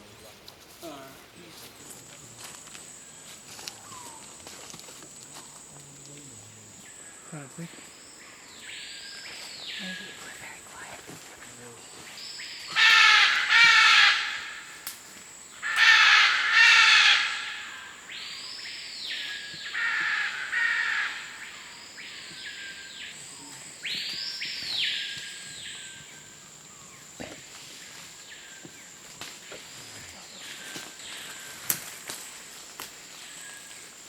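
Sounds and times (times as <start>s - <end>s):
birds squawking harshly: 12.6s - 14.8s, 15.6s - 18.0s, 19.5s - 21.7s.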